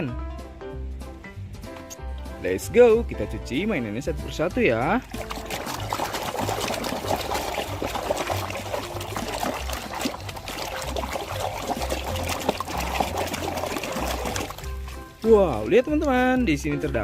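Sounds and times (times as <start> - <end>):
water splashing and trickling: 3.5 - 17.0.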